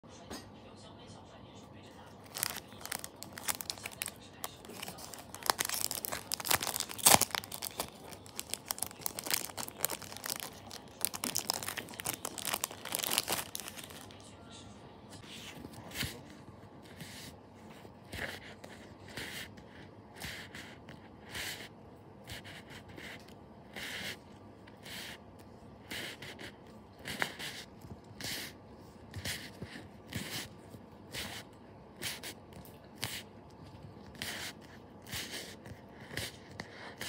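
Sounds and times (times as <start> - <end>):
paper and stickers rustling: 2.0 - 14.3.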